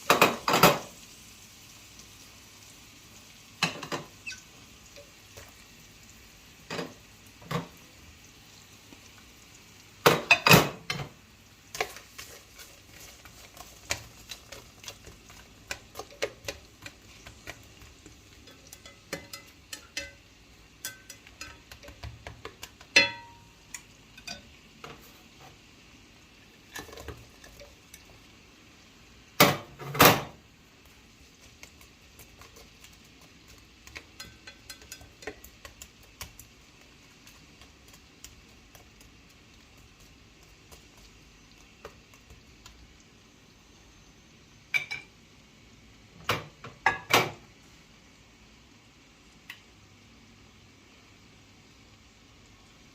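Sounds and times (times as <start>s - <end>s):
utensils clinking against cookware: 3.6s - 4.4s, 10.1s - 11.1s, 13.4s - 23.5s, 24.2s - 25.0s, 26.7s - 27.8s, 33.8s - 35.6s.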